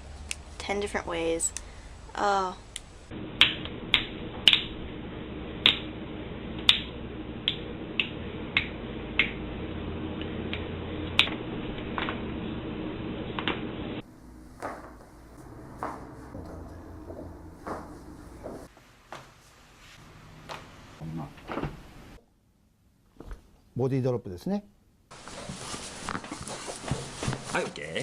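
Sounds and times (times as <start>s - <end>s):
steady low hum: 0.0s - 18.7s.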